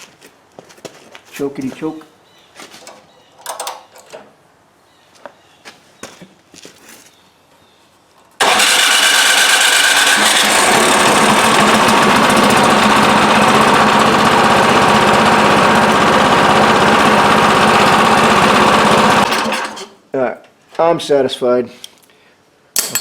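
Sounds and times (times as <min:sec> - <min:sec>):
small engine running on choke: 0:08.4 - 0:19.9.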